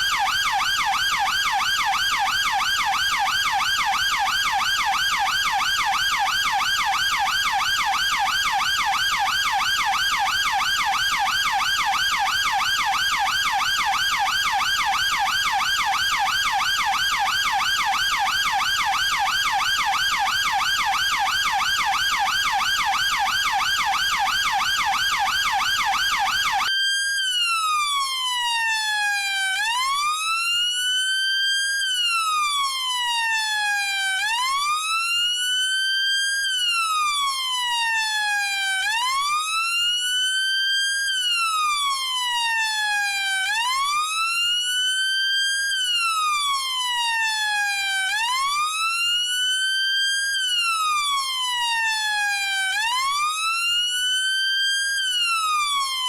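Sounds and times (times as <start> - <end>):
police siren yelp and wail: 0.0 - 56.0.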